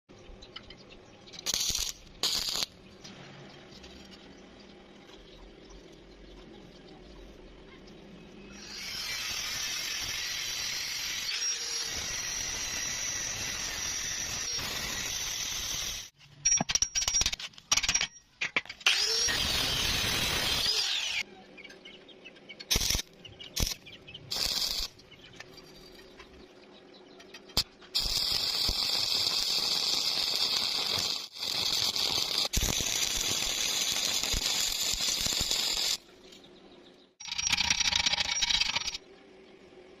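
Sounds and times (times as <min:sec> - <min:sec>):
metalworking tool hissing: 0:08.6 - 0:16.2, 0:24.3 - 0:24.9, 0:28.0 - 0:36.0.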